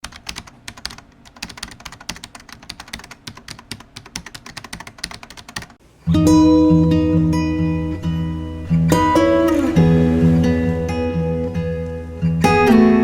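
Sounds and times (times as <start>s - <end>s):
rapid irregular clicking: 0.0s - 5.8s.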